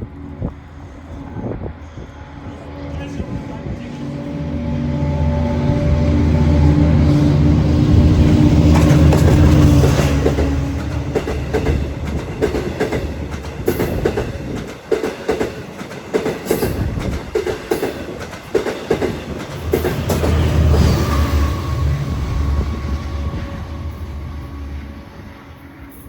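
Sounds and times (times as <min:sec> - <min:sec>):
train power equipment drone: 0:00.0 - 0:26.0
train wheels clicking over rail joints: 0:07.7 - 0:21.5.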